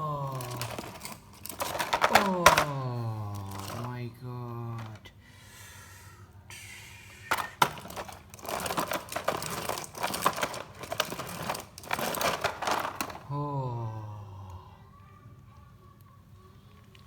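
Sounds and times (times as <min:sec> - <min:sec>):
plastic clicking and crinkling: 0:00.2 - 0:04.0, 0:07.3 - 0:13.3.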